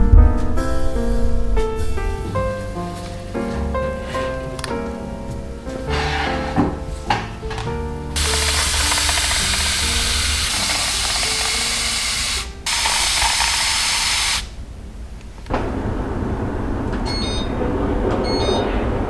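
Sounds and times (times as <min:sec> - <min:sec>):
hissing spray: 0:08.2 - 0:14.6.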